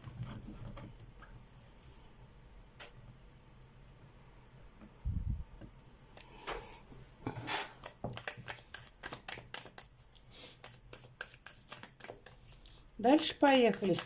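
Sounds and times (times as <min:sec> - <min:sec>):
cards being shuffled: 0:07.7 - 0:14.0.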